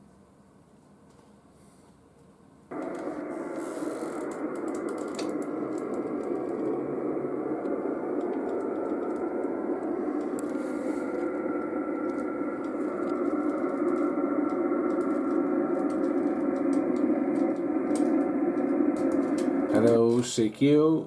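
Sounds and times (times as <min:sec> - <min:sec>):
faint radio tones: 0:02.7 - 0:21.0
radio static hiss: 0:02.7 - 0:21.0.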